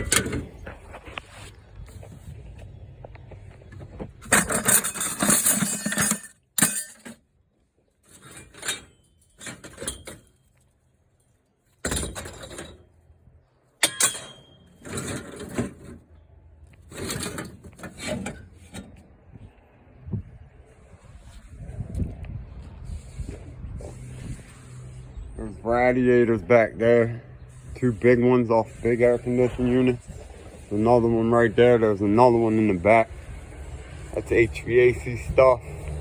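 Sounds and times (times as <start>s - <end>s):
metal clanks: 0.0s - 0.7s, 3.7s - 7.2s, 8.1s - 10.6s, 11.8s - 12.9s, 13.8s - 16.0s, 16.8s - 19.0s
scrap metal clattering: 3.8s - 7.2s, 8.0s - 10.7s, 11.7s - 13.0s, 13.8s - 16.1s, 16.8s - 19.0s.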